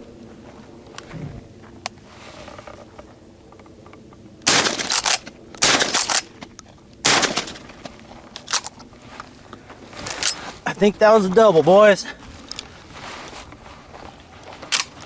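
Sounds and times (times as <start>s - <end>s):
shotgun shots with echo: 4.5s - 6.2s, 7.0s - 7.6s.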